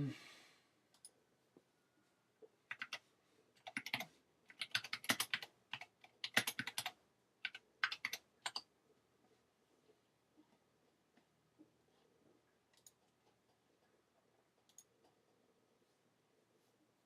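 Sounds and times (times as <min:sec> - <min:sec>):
computer keyboard typing: 0:02.7 - 0:03.0, 0:03.6 - 0:08.7, 0:12.7 - 0:13.6.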